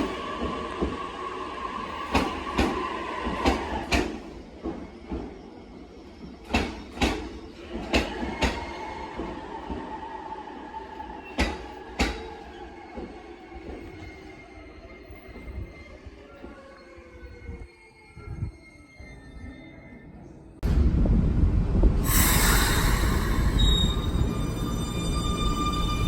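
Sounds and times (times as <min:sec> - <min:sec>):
train wheels clacking over rail joints: 0:06.2 - 0:09.3, 0:11.3 - 0:13.9
electric train whine: 0:22.0 - 0:26.0.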